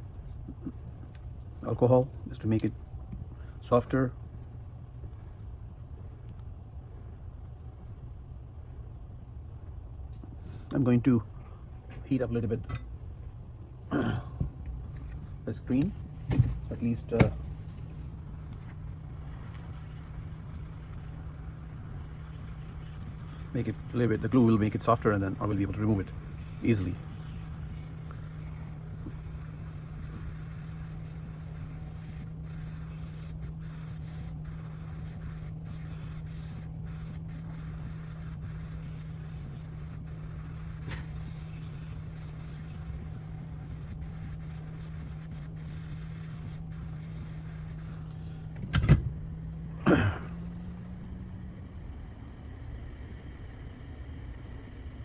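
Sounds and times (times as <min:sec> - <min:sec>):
heat gun humming: 0:12.2 - 0:54.8.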